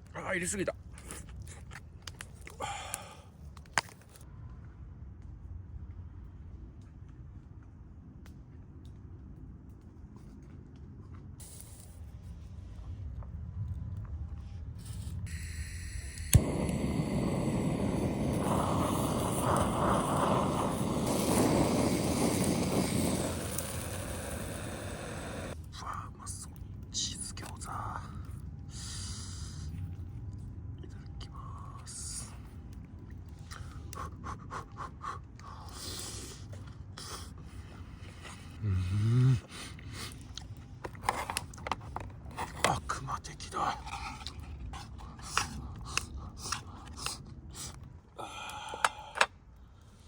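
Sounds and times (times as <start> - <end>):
breathy exhales: 2.5 - 3.4, 15.3 - 25.6, 47.6 - 49.4
mouth clicks and chewing: 32.4 - 42.6, 43.4 - 49.2
man humming mmm: 38.6 - 39.6.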